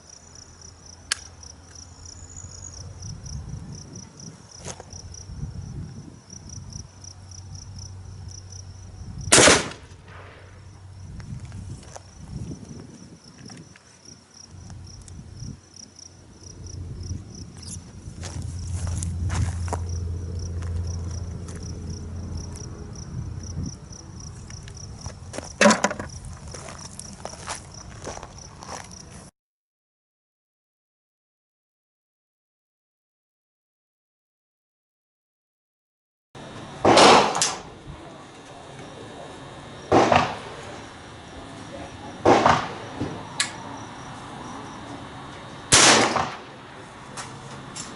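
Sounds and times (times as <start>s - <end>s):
crickets chirping: 0.0s - 29.3s, 36.4s - 47.9s
gunshots with echo: 9.3s - 10.6s, 36.8s - 37.6s, 39.9s - 40.6s, 42.2s - 43.0s, 45.7s - 46.5s
low rumble: 16.3s - 25.3s.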